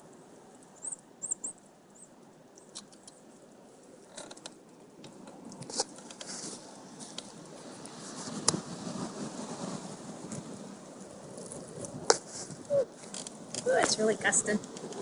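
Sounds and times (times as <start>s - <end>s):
wind hiss: 0.0s - 15.0s
small bird chirping: 0.8s - 2.8s.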